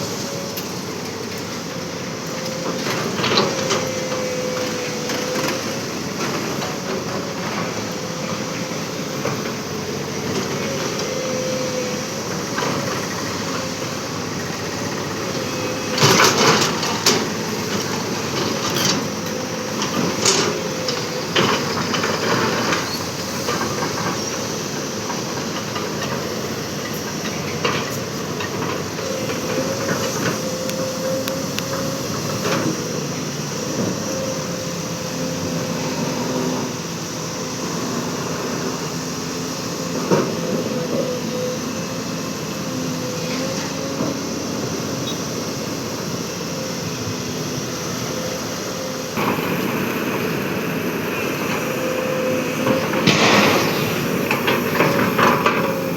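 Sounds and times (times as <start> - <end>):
excavator engine running: 0.0 - 55.9
wavering hydraulic whine: 0.0 - 55.9.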